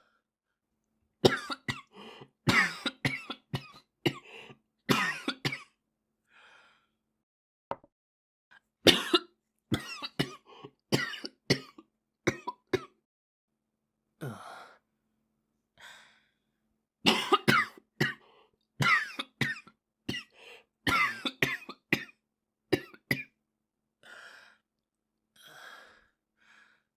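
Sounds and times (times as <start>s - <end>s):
boy coughing: 17.1s - 18.2s.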